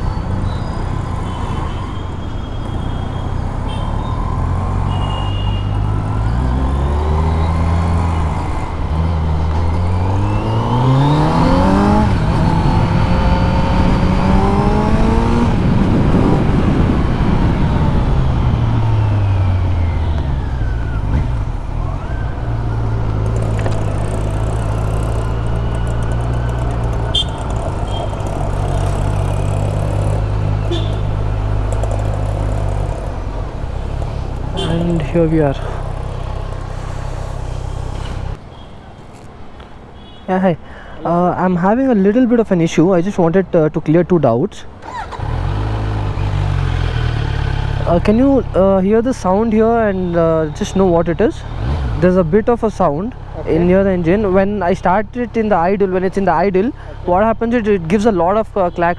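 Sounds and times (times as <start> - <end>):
motorcycle engine accelerating: 6.1 - 20.2, 21.0 - 38.4, 44.8 - 48.2.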